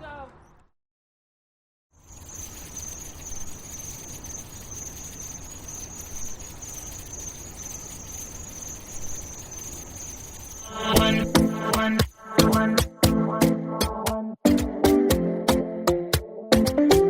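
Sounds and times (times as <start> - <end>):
high-pitched insect trill: 2.0 - 12.7.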